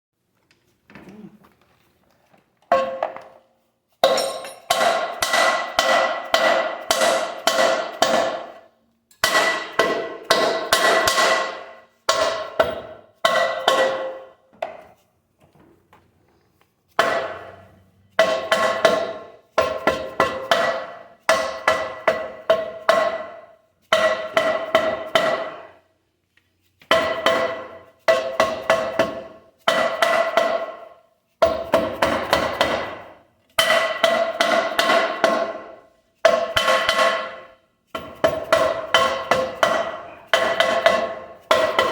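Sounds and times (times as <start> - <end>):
hammer striking ringing metal: 4.0 - 8.6.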